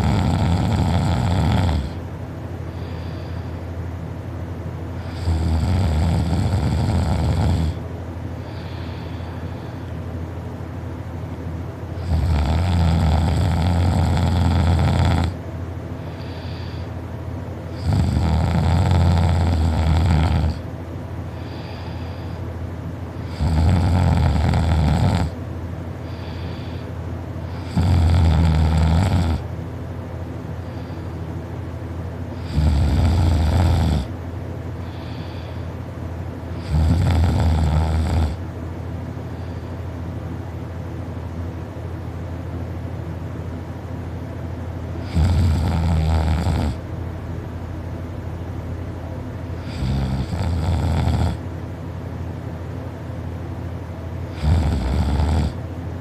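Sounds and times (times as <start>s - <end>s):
person snoring loudly: 0.0s - 2.0s, 5.0s - 7.8s, 12.0s - 15.4s, 17.7s - 20.7s, 23.2s - 25.4s, 27.5s - 29.4s, 32.4s - 34.1s, 36.6s - 38.4s, 45.0s - 46.8s, 49.6s - 51.4s, 54.3s - 55.6s.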